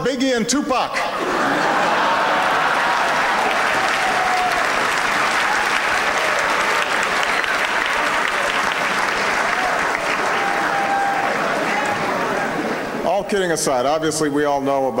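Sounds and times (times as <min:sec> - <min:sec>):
laughter: 0:01.0 - 0:03.2
cheering: 0:01.1 - 0:12.9
audience applauding: 0:01.2 - 0:12.8.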